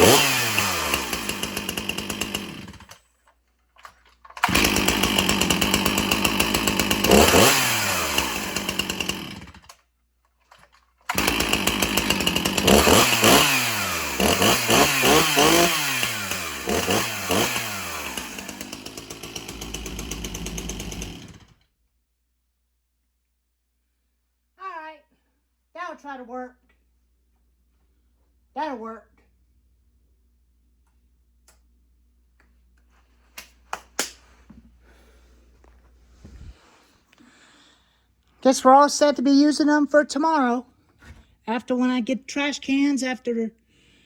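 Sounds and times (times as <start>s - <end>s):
chainsaw revving and idling: 0.0s - 3.0s, 4.4s - 9.8s, 11.1s - 21.6s.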